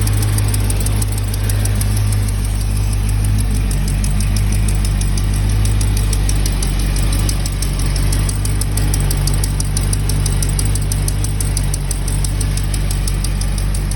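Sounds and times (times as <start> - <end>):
car engine idling: 0.0 - 13.9
fast steady engine ticking: 0.0 - 13.9.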